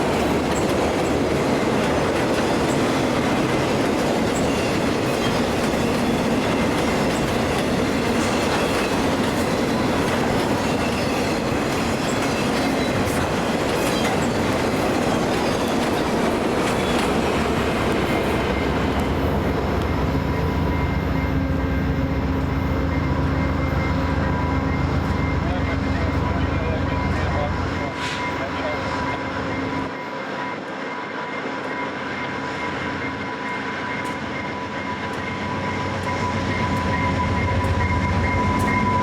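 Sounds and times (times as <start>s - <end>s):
train wheels clicking on rails: 0.0s - 20.0s, 32.3s - 39.0s
wheel squeal: 4.3s - 16.0s.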